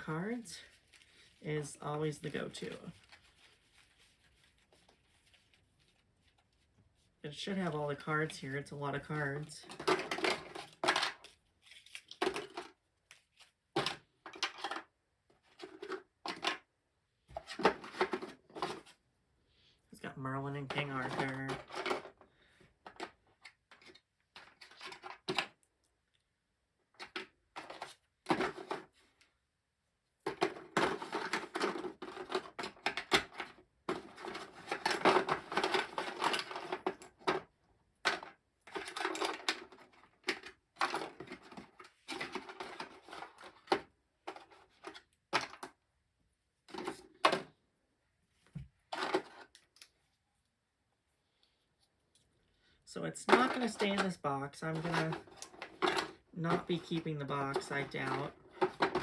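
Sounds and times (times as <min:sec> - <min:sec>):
cards rustling and clicking: 0:00.2 - 0:06.5, 0:09.0 - 0:16.7, 0:22.8 - 0:25.6, 0:30.3 - 0:37.5, 0:53.0 - 0:59.0.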